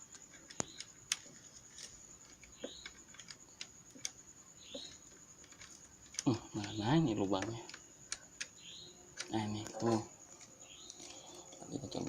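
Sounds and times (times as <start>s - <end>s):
soft rustle: 0.4s - 3.4s.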